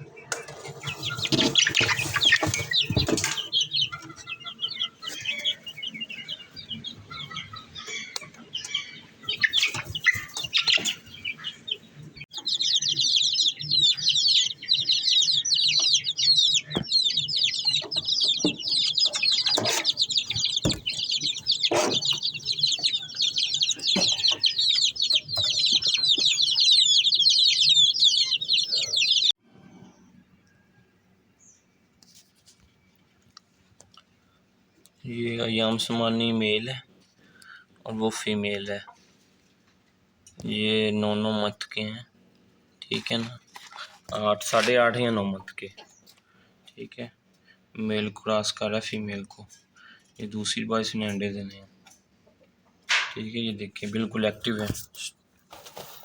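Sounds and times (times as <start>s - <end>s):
chickens clucking: 0.0s - 30.2s, 42.7s - 56.0s
small birds chirping: 0.0s - 56.0s.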